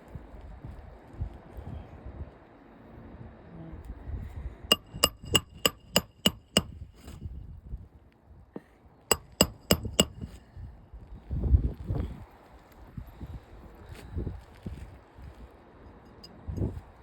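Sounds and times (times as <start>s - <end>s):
hammer striking roofing nails: 4.7s - 6.8s, 9.1s - 10.4s.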